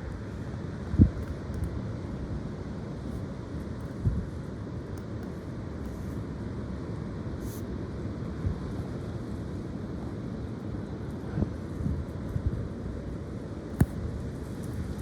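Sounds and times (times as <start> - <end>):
wind buffeting the microphone: 0.0 - 2.5, 3.9 - 4.6, 8.3 - 15.0.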